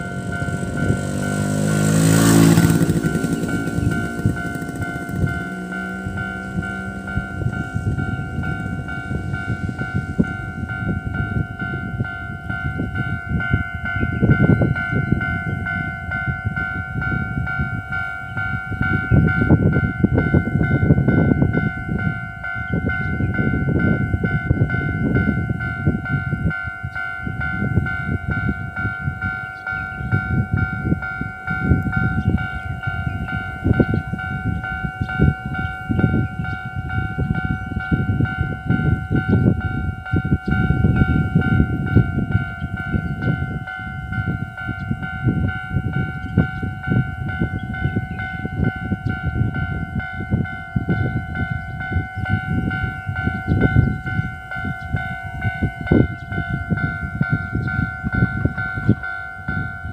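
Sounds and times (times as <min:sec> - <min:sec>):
heavy low rumble: 0:00.0 - 0:22.2
crossing warning bell ringing: 0:00.0 - 0:59.9.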